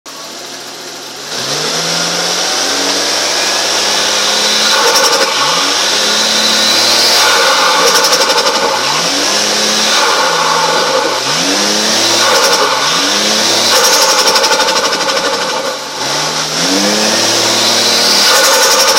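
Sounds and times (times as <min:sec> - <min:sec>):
car engine revving: 0:00.1 - 0:18.9.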